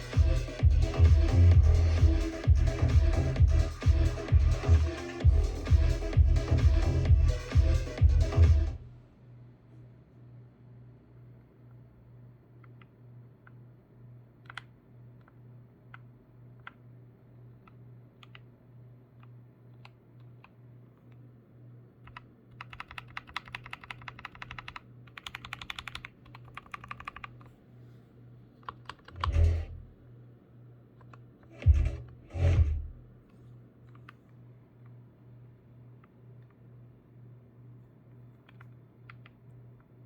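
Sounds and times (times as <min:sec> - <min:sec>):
mechanical keyboard typing: 0:14.4 - 0:15.4, 0:22.0 - 0:27.5, 0:28.6 - 0:29.5, 0:38.4 - 0:39.4.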